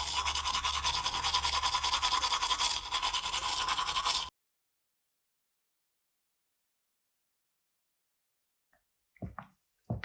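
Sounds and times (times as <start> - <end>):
rapid scrubbing strokes: 0.0 - 4.3.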